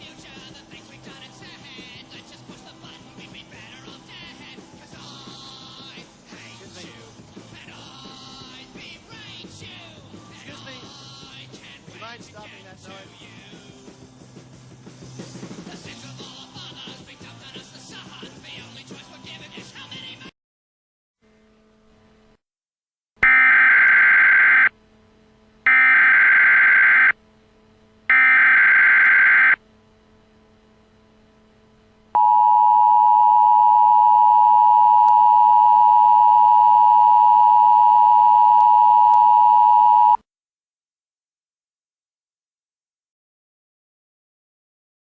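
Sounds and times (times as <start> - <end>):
two-tone attention signal: 23.2 - 24.7, 25.7 - 27.2, 28.1 - 29.6, 32.2 - 40.2
warbling data tone bursts: 23.2 - 24.7, 25.7 - 27.2, 28.1 - 29.6
faint steady hum: 23.2 - 40.2.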